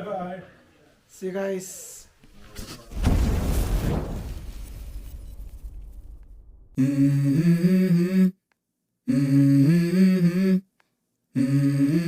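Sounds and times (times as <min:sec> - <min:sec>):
hummed vocal phrase: 0:06.8 - 0:08.4, 0:09.1 - 0:10.7, 0:11.4 - 0:12.0.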